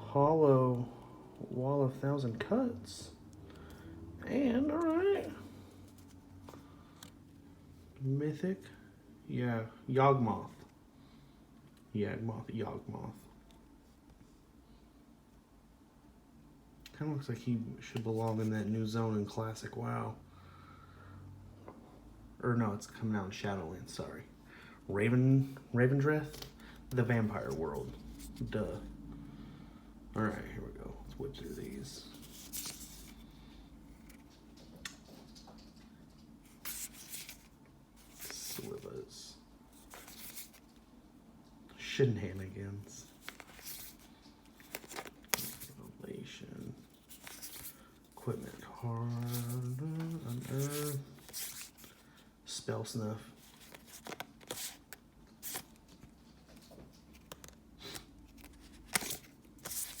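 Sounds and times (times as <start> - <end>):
card rustle: 4.6 - 7.1, 26.2 - 28.9, 31.1 - 40.8, 42.4 - 46.0, 46.6 - 52.2, 52.8 - 60.0
cards flipped by hand: 26.2 - 28.5, 31.4 - 33.2, 34.0 - 38.9, 39.8 - 40.8, 43.0 - 45.8, 46.9 - 52.0, 53.4 - 60.0.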